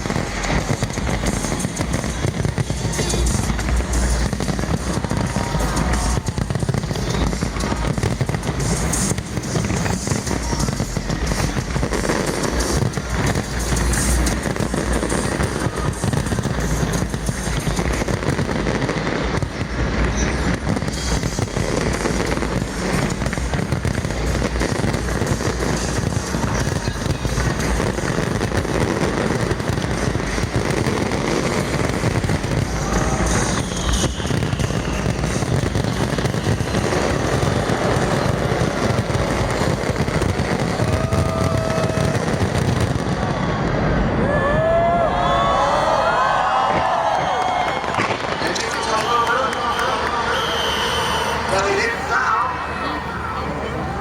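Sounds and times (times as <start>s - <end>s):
music playing: 0.0s - 18.1s
fireworks bangs and crackling: 0.0s - 54.0s.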